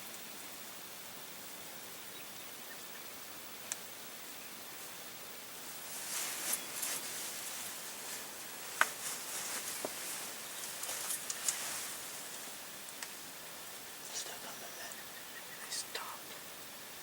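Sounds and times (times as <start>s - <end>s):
soft rustling: 5.6s - 13.3s.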